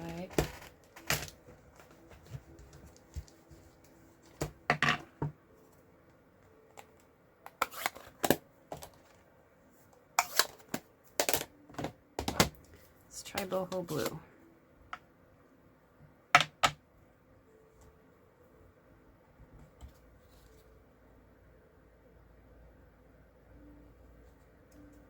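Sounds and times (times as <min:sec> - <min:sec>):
craft supplies clicking on desk: 0:00.0 - 0:02.0.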